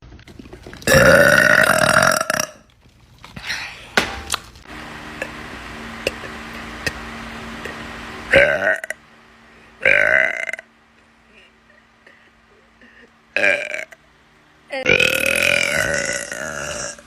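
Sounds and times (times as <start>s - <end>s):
person burping loudly: 0.8s - 2.7s, 8.3s - 9.0s, 9.8s - 10.7s, 13.4s - 14.0s, 14.8s - 17.0s.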